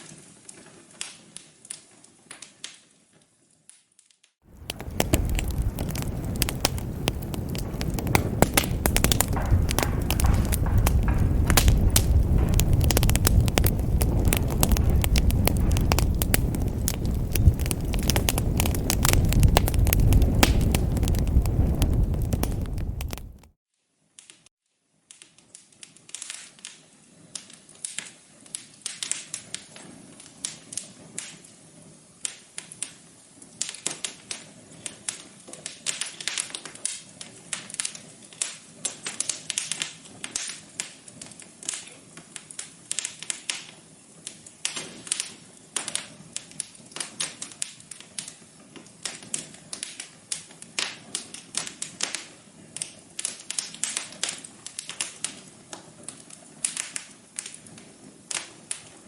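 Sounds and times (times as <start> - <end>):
wood fire crackling: 4.4 - 23.6, 25.5 - 59.0.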